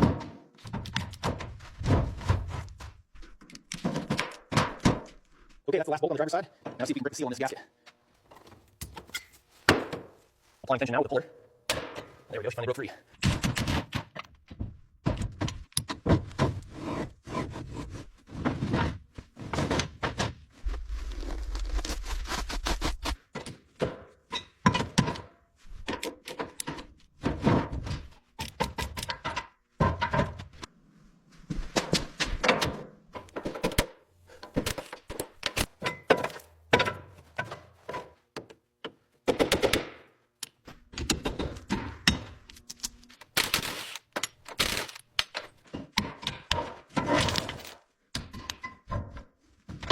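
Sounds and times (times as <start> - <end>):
metal tools knocking and clanking: 34.4 - 39.0.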